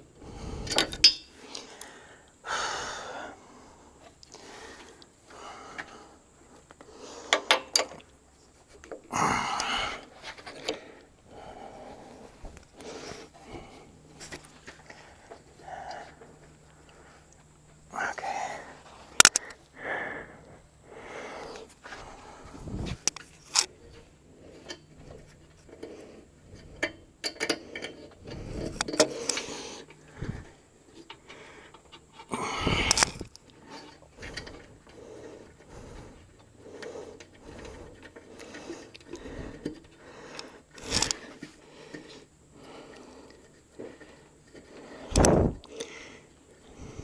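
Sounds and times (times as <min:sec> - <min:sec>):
metal tools clinking and scraping: 0:00.7 - 0:01.3.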